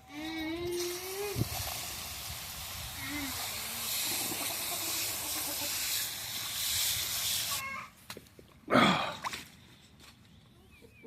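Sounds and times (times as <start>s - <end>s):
steady hiss: 0.0s - 7.7s.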